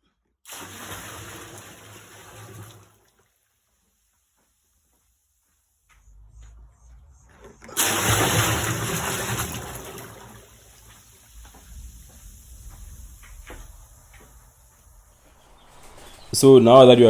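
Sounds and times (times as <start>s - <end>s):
water gushing into plastic bin: 0.5s - 3.3s, 7.6s - 14.2s.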